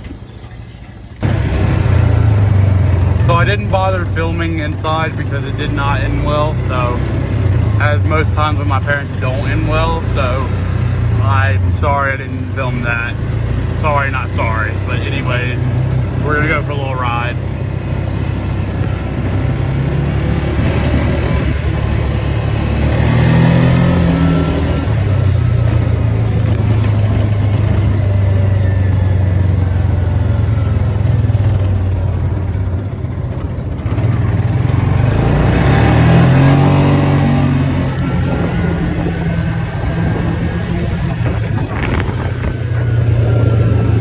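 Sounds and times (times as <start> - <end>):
utility vehicle engine revving: 0.0 - 44.0.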